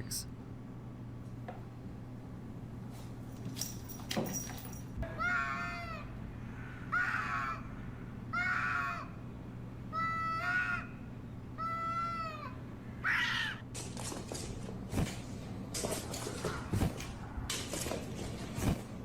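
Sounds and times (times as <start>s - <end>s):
cat meowing: 11.6s - 13.6s.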